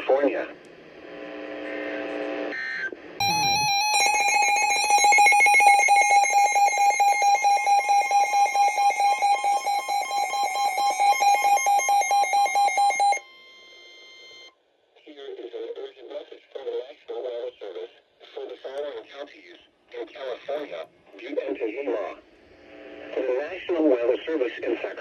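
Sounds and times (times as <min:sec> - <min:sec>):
pulsing electronic alarm tone: 0:03.2 - 0:14.5.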